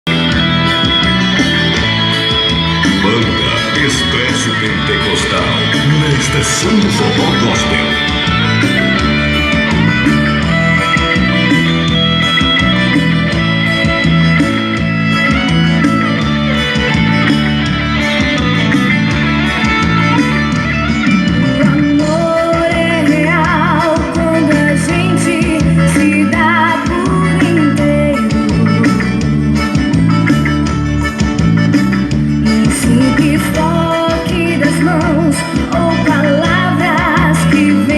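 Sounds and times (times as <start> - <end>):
guitar: 0.0 - 37.9
repeating bass line: 0.0 - 37.9
wavering melody line: 0.1 - 23.0.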